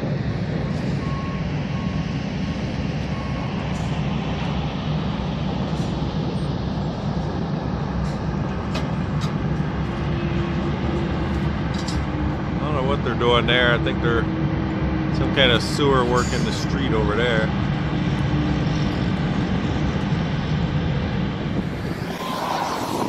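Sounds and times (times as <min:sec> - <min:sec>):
trucks and machinery rumbling: 0:00.0 - 0:23.0
reversing beeper: 0:03.0 - 0:03.7, 0:21.6 - 0:23.0.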